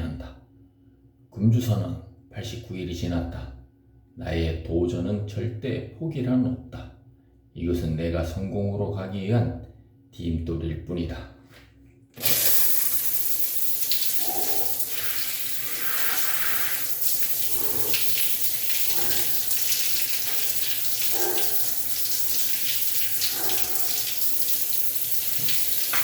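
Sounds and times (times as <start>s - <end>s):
water running: 12.2s - 26.0s
water splashing: 12.2s - 26.0s.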